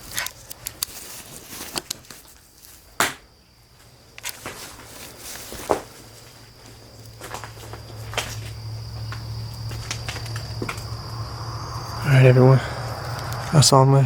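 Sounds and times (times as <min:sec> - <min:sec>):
footsteps walking: 0:03.8 - 0:11.4.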